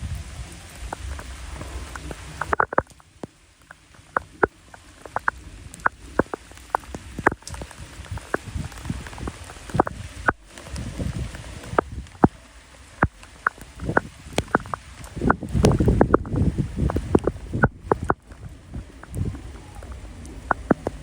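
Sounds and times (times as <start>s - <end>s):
faint rain hiss: 0.0s - 21.0s
raindrops tapping a surface: 0.0s - 21.0s.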